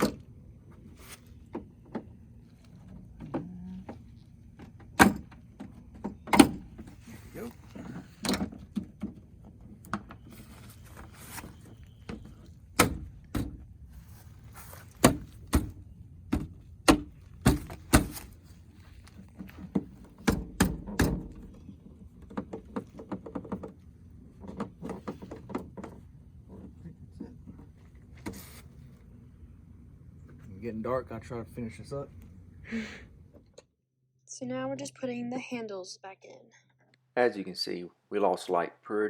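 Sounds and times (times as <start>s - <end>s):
door panel knocks and thunks: 4.6s - 6.9s, 12.1s - 13.6s, 15.0s - 18.3s, 19.6s - 21.6s.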